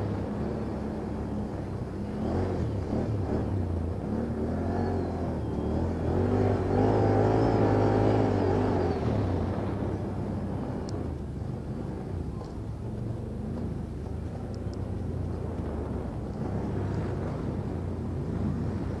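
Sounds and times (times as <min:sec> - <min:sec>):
quad engine revving: 0:02.1 - 0:09.9.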